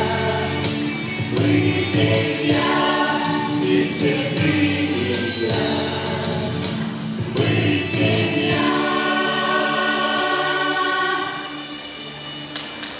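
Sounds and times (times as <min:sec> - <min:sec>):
vocal ensemble singing in chorus: 0:00.0 - 0:12.5
backing music: 0:00.0 - 0:12.9.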